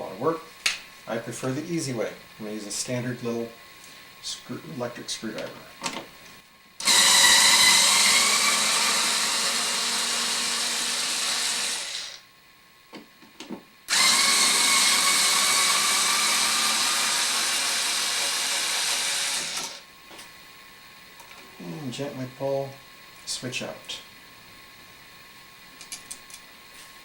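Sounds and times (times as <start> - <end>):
electric screwdriver whine: 6.8 - 12.2, 13.9 - 19.8.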